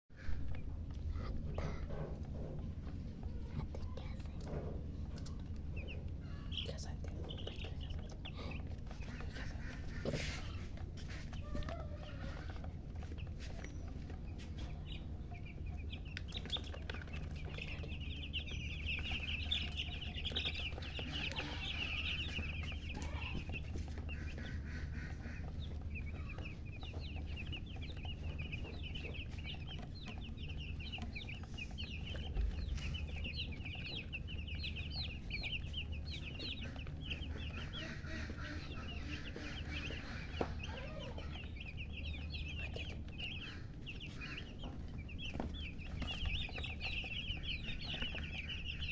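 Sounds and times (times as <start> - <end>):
baby chicks peeping: 0.1 - 48.9
hen clucking: 0.2 - 48.9
steady low hum: 0.2 - 48.9.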